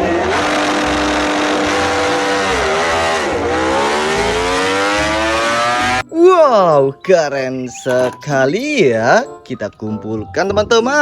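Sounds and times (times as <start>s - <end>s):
motorbike engine revving: 0.0s - 6.0s.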